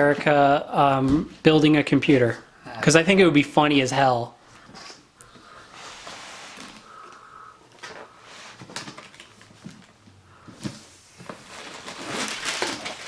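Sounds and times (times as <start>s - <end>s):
cardboard rustling: 5.7s - 13.0s.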